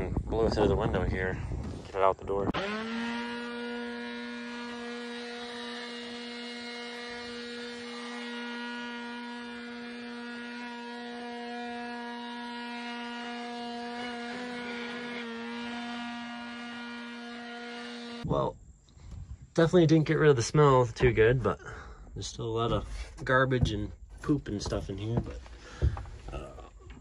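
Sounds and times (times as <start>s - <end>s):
electric blower whining: 2.5s - 18.3s, 22.7s - 27.0s.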